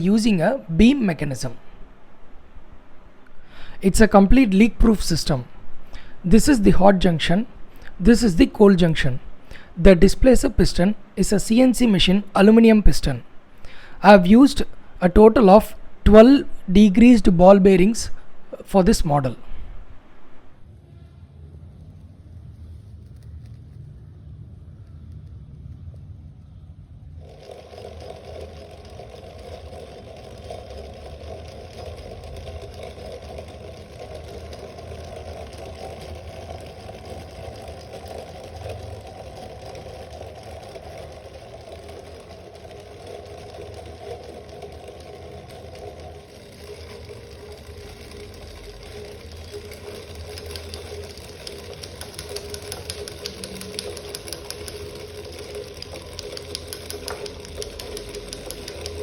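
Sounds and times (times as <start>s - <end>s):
model engine mechanical clatter: 27.1s - 59.0s
rapid ticking: 27.1s - 59.0s.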